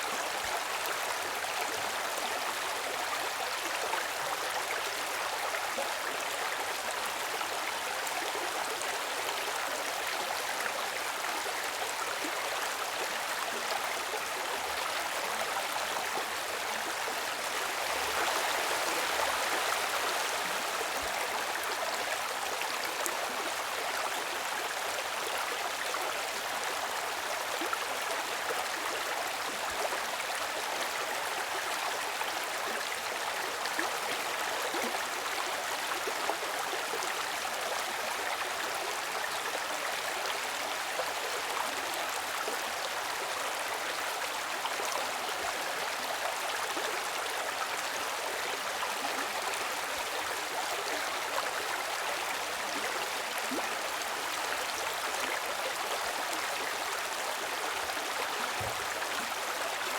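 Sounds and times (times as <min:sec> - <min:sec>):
stream water rushing: 0:12.7 - 0:28.6.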